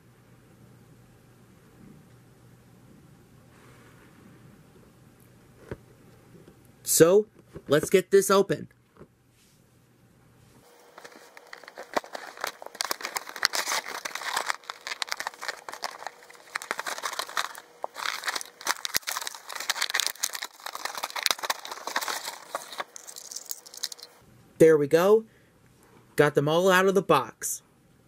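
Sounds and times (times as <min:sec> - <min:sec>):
packaging crinkling: 0:10.7 - 0:24.1.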